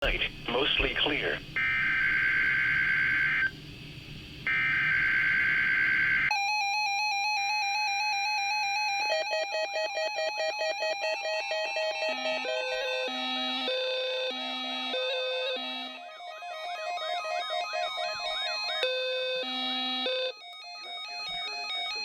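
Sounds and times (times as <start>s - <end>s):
electronic beeping melody: 9.0s - 22.0s.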